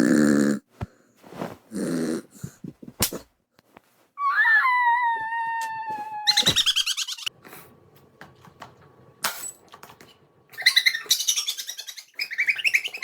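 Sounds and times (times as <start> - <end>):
bird chirping rapidly: 6.3 - 7.3, 10.6 - 13.0.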